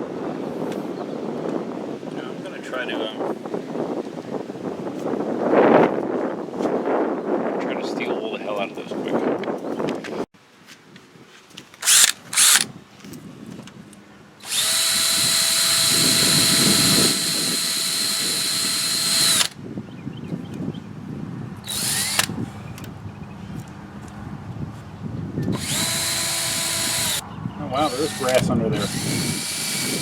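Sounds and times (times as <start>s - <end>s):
electric power drill scrubbing: 11.8s - 12.6s, 14.4s - 19.6s, 21.7s - 22.3s, 25.5s - 27.2s, 27.8s - 30.0s.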